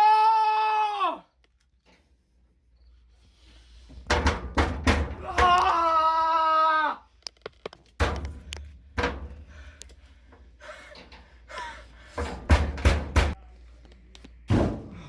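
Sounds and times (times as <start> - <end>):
knocks and thumps: 4.0 - 5.6, 12.2 - 13.4.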